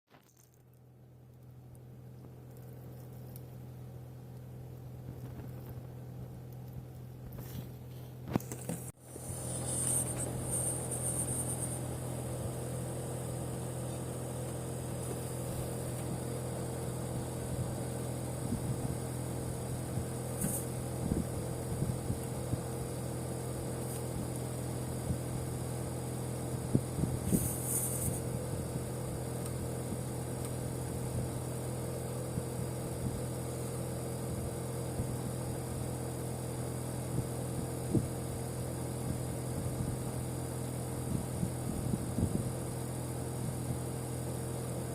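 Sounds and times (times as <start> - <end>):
air conditioner compressor hum: 0.1 - 44.9
high hisses: 9.1 - 17.1, 26.7 - 28.5.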